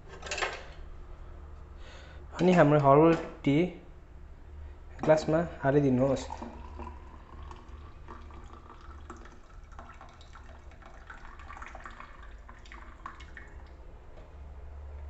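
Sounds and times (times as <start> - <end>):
tea pouring into a glass: 6.0 - 13.8.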